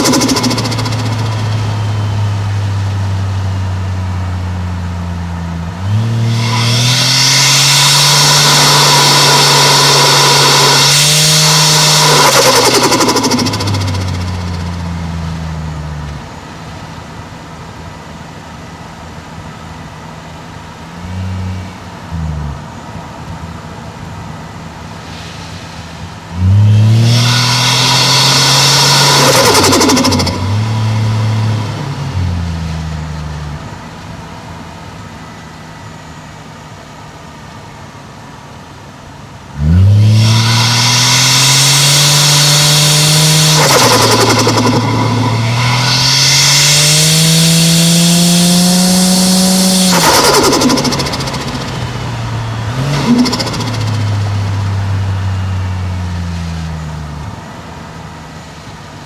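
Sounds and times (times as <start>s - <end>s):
turbo flutter: 0.0s - 2.6s, 6.2s - 15.5s, 27.0s - 33.6s, 40.1s - 55.5s
exhaust pop: 0.0s - 16.6s, 24.9s - 34.4s, 39.6s - 57.5s
car engine revving: 0.0s - 17.9s, 20.4s - 35.4s, 39.4s - 58.6s.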